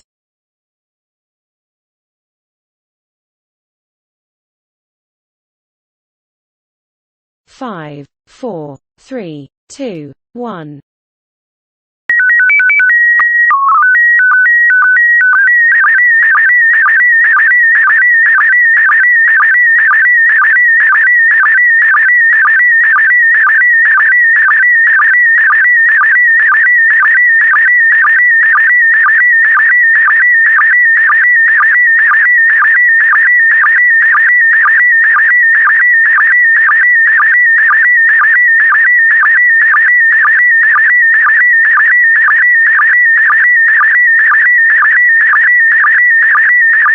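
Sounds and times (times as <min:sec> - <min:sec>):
warbling chirping data tone: 0:12.1 - 0:41.9.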